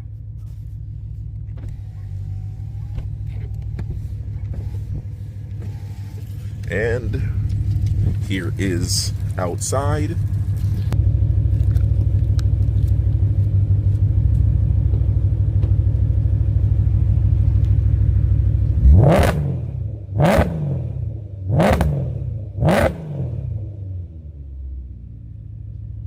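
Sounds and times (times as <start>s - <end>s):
car engine idling: 0.0s - 26.0s
engine revving: 1.6s - 15.0s, 18.6s - 24.6s.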